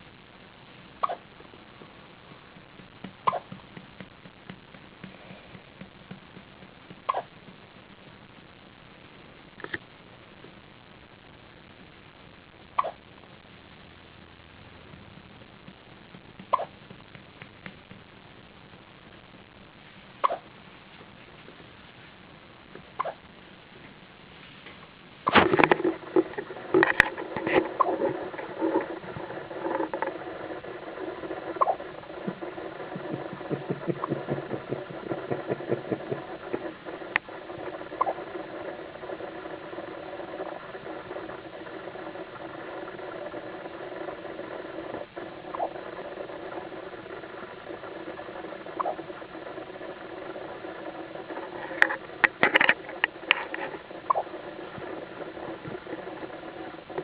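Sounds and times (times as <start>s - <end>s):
steady hum: 0.0s - 57.0s
rustling and clicking of handling: 23.8s - 57.0s.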